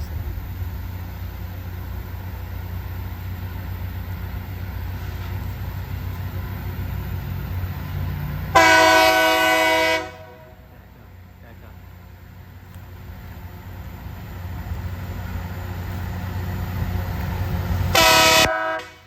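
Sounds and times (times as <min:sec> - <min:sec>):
diesel engines rumbling: 0:00.0 - 0:19.0
train horn blast: 0:08.5 - 0:10.7, 0:17.9 - 0:19.0.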